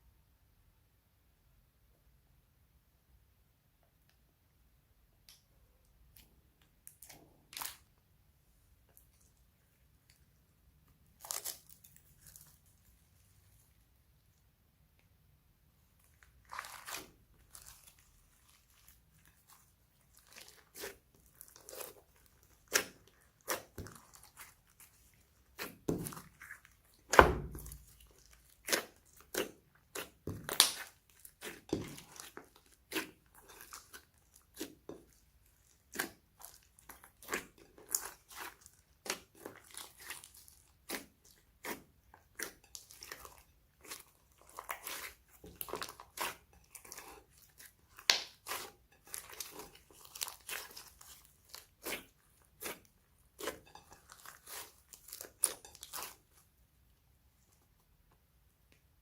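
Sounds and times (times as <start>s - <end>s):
slime squelching and popping: 10.9s - 13.0s, 16.0s - 56.5s.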